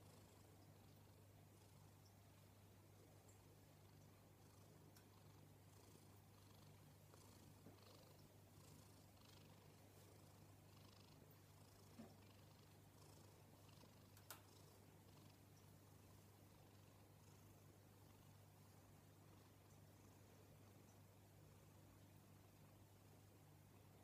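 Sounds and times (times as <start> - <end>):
pet snoring faintly: 4.4 - 17.6
small clicks: 14.1 - 14.5.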